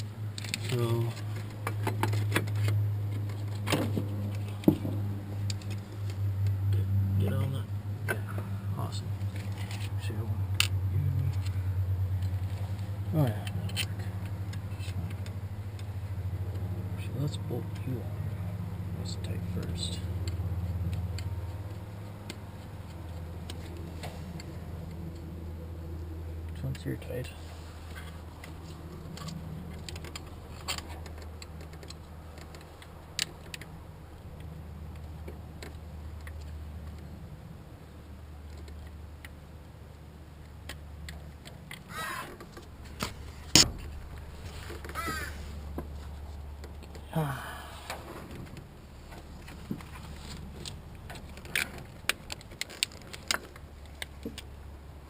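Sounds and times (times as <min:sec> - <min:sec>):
steady low hum: 0:00.0 - 0:55.0
bird calling: 0:41.8 - 0:42.4, 0:44.9 - 0:45.5.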